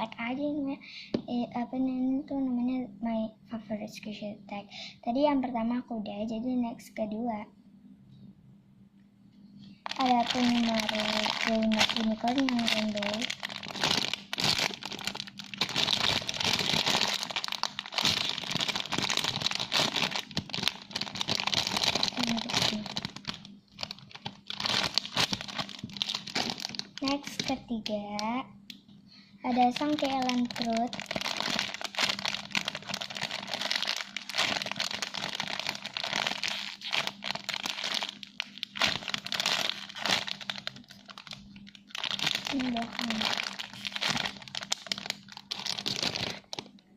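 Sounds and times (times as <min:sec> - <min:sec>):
faint steady hum: 0:00.0 - 0:46.9
squishy toy crinkling and rustling: 0:09.8 - 0:28.3, 0:29.5 - 0:46.8.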